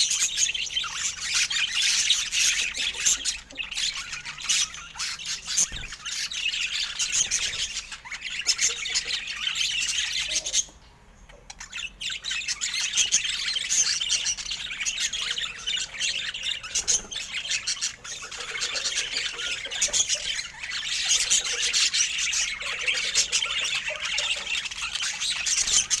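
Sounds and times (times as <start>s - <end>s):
budgerigars chattering and squawking: 0.0s - 26.0s.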